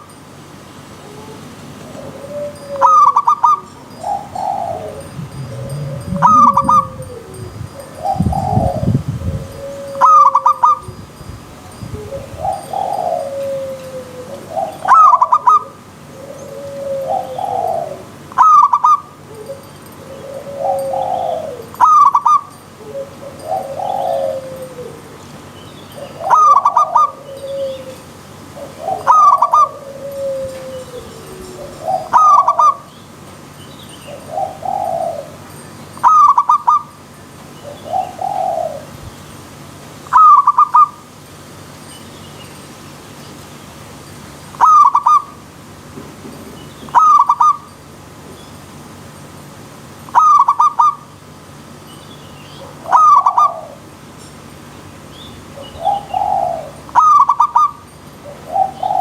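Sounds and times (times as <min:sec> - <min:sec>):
doves cooing: 0:00.9 - 0:10.9, 0:12.0 - 0:32.9, 0:34.1 - 0:37.0, 0:37.6 - 0:39.3, 0:40.0 - 0:41.1, 0:44.6 - 0:45.6, 0:46.8 - 0:47.7, 0:50.1 - 0:51.0, 0:52.6 - 0:54.0, 0:55.5 - 0:59.0
soft warbling coos: 0:01.0 - 0:10.8.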